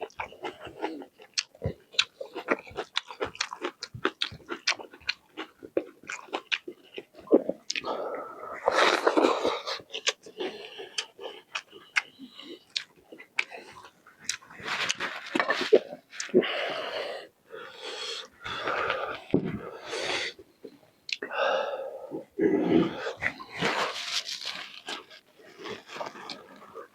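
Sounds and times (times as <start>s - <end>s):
wet chewing: 0.0s - 16.4s, 22.8s - 26.9s
noisy breaths and slurps: 7.2s - 26.9s
lip smacks and mouth clicks: 8.6s - 13.6s, 21.1s - 21.3s.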